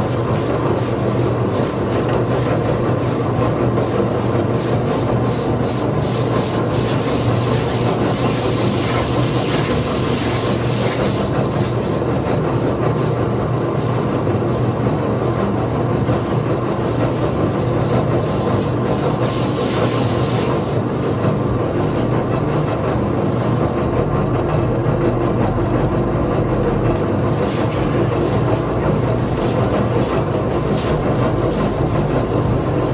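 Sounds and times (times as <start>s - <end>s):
power sander on wood: 0.0s - 24.2s, 27.0s - 32.9s.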